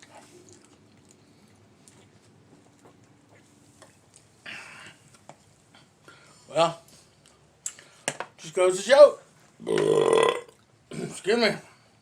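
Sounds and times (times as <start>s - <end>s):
faint chewing: 0.0s - 6.0s.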